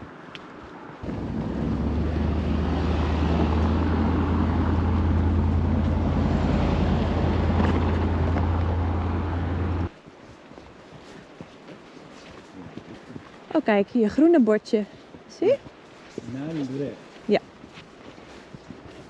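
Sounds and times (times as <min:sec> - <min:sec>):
low engine-like drone: 0:01.0 - 0:09.9.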